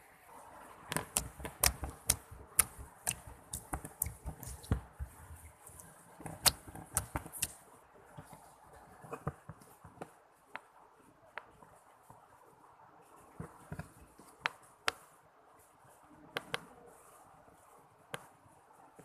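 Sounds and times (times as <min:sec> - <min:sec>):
slime clicking and popping: 0:01.0 - 0:04.8, 0:06.3 - 0:07.5.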